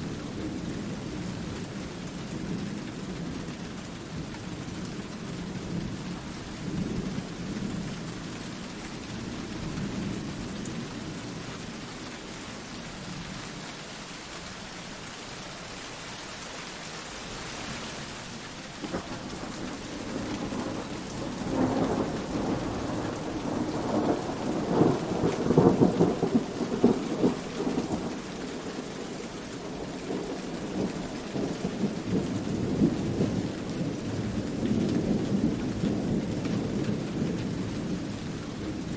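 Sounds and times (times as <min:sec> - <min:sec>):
steady rain falling: 0:00.0 - 0:38.9
rolling thunder: 0:18.8 - 0:28.8.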